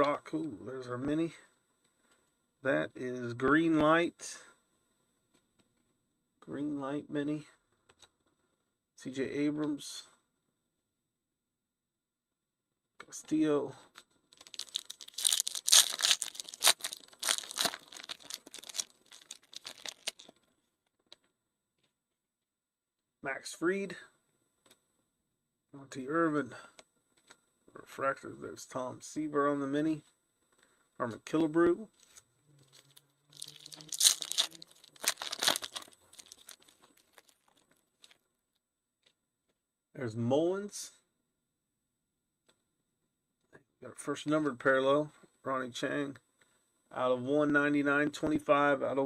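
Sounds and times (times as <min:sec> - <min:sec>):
foil wrapper tearing and crinkling: 0:14.4 - 0:20.3, 0:33.4 - 0:38.2.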